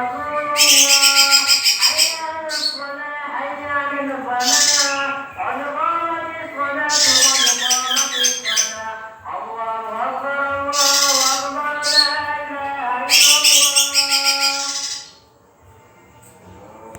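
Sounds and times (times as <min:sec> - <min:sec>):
background music of held tones: 0:00.0 - 0:16.9
bird singing fast chattering notes: 0:00.6 - 0:02.8, 0:04.4 - 0:05.2, 0:06.9 - 0:08.9, 0:10.7 - 0:12.3, 0:13.1 - 0:15.2.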